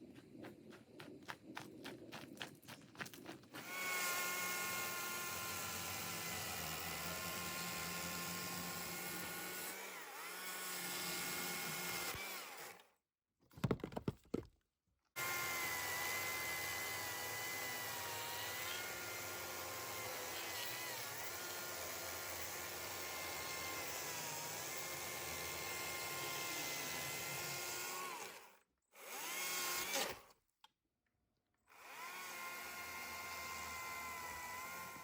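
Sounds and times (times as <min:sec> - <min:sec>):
battery chainsaw cutting log: 0:03.6 - 0:12.9, 0:15.2 - 0:30.3, 0:31.7 - 0:35.0.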